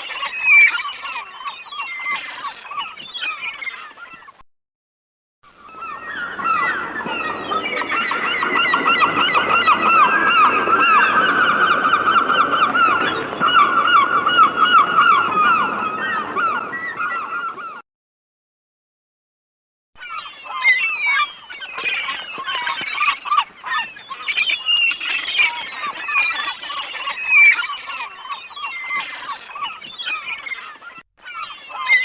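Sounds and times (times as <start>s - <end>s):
flock of birds calling: 0.0s - 4.3s, 5.6s - 17.8s, 20.0s - 32.0s.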